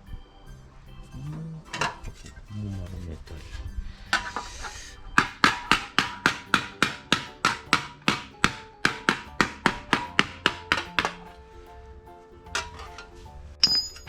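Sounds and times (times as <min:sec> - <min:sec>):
metal scrape: 0:01.7 - 0:06.3, 0:12.5 - 0:14.0
hammer striking sheet steel: 0:04.1 - 0:11.4.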